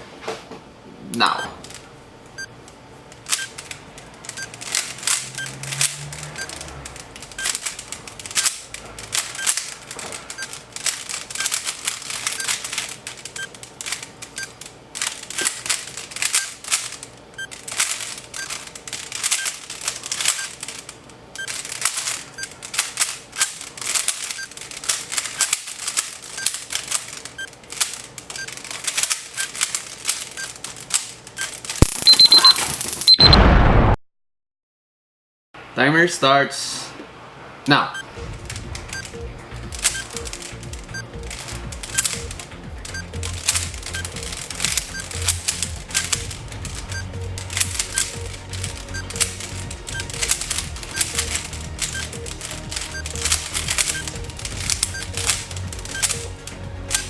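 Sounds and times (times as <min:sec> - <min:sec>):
puzzle cube clicking and rattling: 0:01.6 - 0:33.1, 0:38.2 - 0:57.0
short high beeps: 0:31.4 - 0:33.4
noisy burst: 0:31.8 - 0:34.0.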